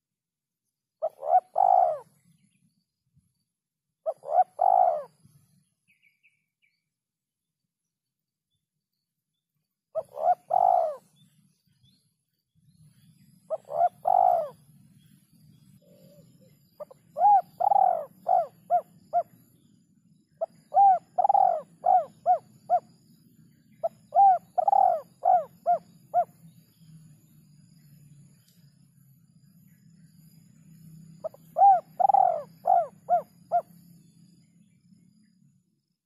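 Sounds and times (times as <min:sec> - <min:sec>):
dove cooing: 0:01.0 - 0:02.2, 0:04.1 - 0:05.2, 0:10.0 - 0:11.1, 0:13.5 - 0:14.7, 0:15.8 - 0:19.4, 0:20.4 - 0:22.9, 0:23.8 - 0:26.4, 0:31.2 - 0:33.8.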